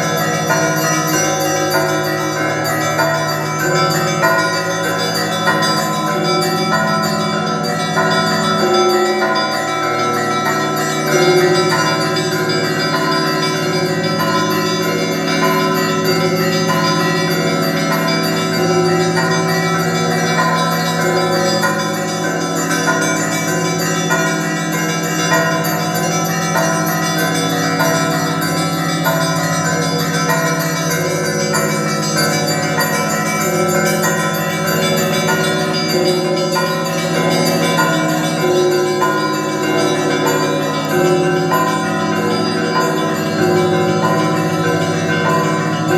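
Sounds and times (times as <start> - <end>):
small high bells ringing: 0.0 - 45.9
deep bell humming: 25.6 - 45.9.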